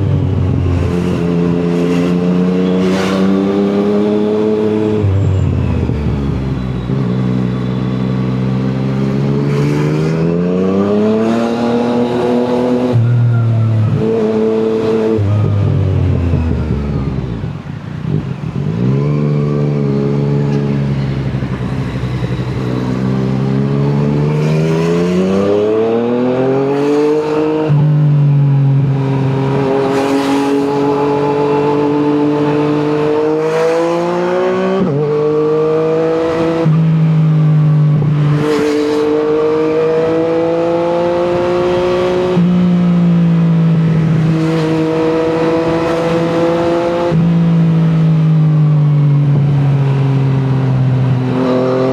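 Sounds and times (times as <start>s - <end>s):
motorcycle engine accelerating: 0.0s - 51.9s.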